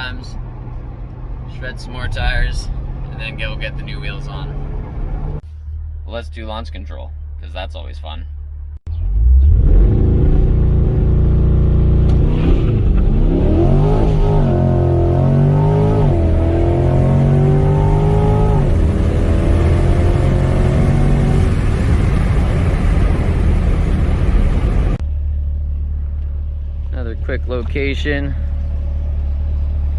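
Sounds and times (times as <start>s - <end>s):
car engine accelerating hard: 9.0s - 25.0s
rushing wind: 17.5s - 25.0s.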